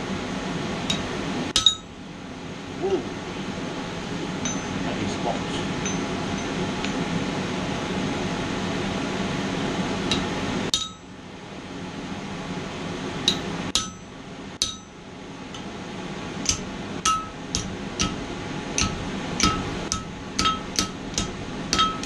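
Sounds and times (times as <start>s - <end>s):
hammer striking steel on anvil: 0.9s - 1.9s, 4.4s - 4.8s, 5.8s - 6.6s, 10.1s - 11.2s, 13.2s - 15.0s, 16.5s - 22.0s.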